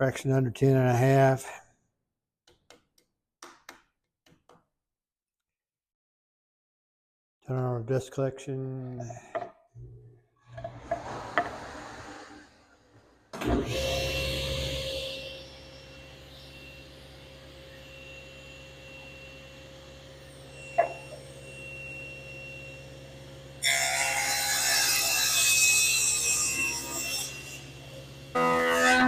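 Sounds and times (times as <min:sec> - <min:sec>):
saw blade cutting wooden board: 0:20.6 - 0:22.6, 0:23.6 - 0:29.0.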